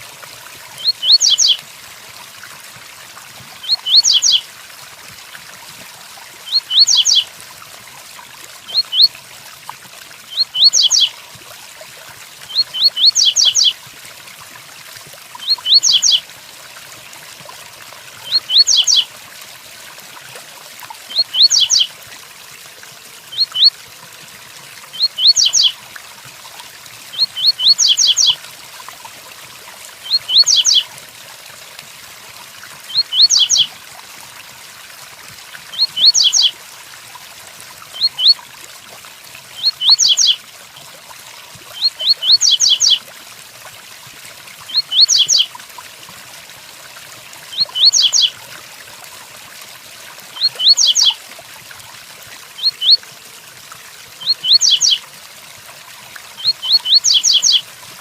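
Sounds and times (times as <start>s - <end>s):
bird singing whistled notes: 0.8s - 1.6s, 3.6s - 4.4s, 6.5s - 7.2s, 8.7s - 9.1s, 10.3s - 11.1s, 12.5s - 13.7s, 15.4s - 16.2s, 18.3s - 19.0s, 21.1s - 21.9s, 23.3s - 23.7s, 25.0s - 25.7s, 27.2s - 28.4s, 30.1s - 30.8s, 32.9s - 33.7s, 35.8s - 36.5s, 38.0s - 38.4s, 39.6s - 40.4s, 41.8s - 43.0s, 44.7s - 45.5s, 47.6s - 48.3s, 50.4s - 51.2s, 52.6s - 53.0s, 54.2s - 55.0s, 56.4s - 57.6s.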